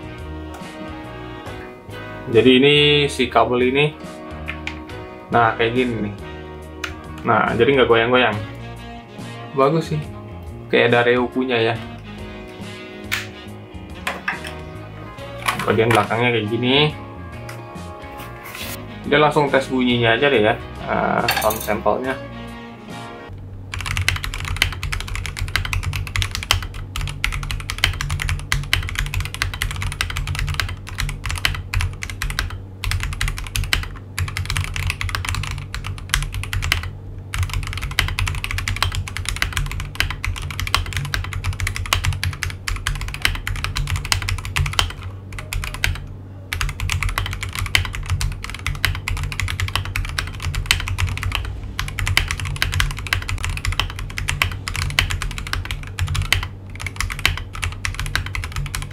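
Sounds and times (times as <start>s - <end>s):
mechanical keyboard typing: 23.7s - 58.9s.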